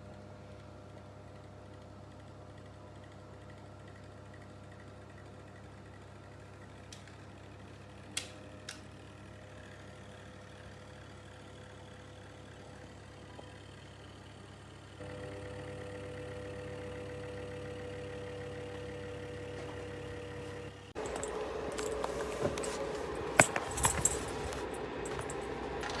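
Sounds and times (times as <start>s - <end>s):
heater fan humming: 21.0s - 26.0s.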